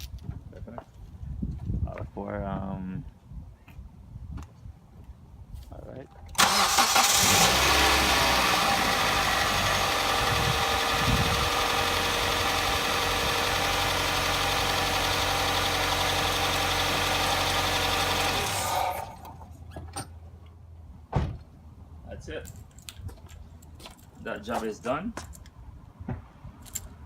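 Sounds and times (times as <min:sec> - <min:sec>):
car engine idling: 0:06.4 - 0:19.6.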